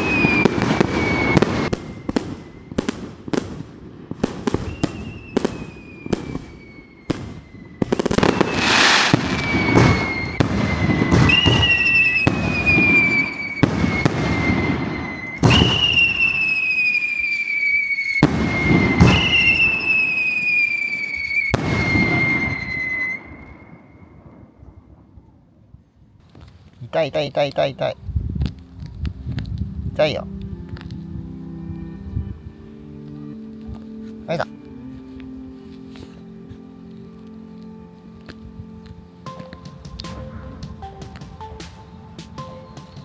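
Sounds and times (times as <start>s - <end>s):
high whistles gliding downward: 0.0s - 25.0s, 37.4s - 43.0s
fireworks crackling: 0.0s - 25.2s, 37.2s - 43.0s
fireworks bangs: 0.0s - 25.4s, 39.3s - 43.0s.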